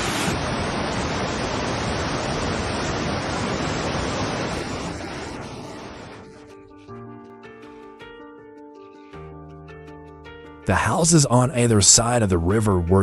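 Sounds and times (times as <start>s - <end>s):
river rushing: 0.0s - 6.6s
music: 5.5s - 13.0s.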